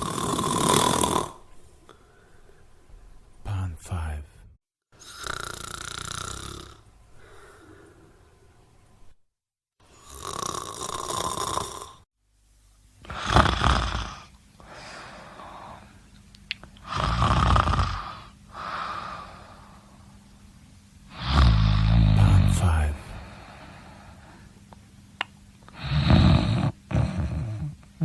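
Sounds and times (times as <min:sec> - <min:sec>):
person snoring: 0:00.0 - 0:02.0, 0:05.0 - 0:08.2, 0:09.9 - 0:12.1, 0:13.0 - 0:15.9, 0:16.8 - 0:19.8, 0:21.1 - 0:24.4, 0:25.7 - 0:27.8
quiet breath: 0:01.6 - 0:03.2, 0:07.1 - 0:08.7, 0:14.6 - 0:16.1, 0:18.0 - 0:20.2, 0:23.0 - 0:24.6.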